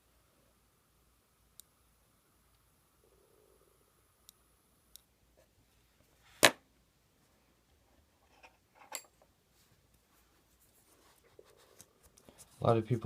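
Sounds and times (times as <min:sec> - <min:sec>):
clicks and rustles handling tools: 0:08.3 - 0:09.3.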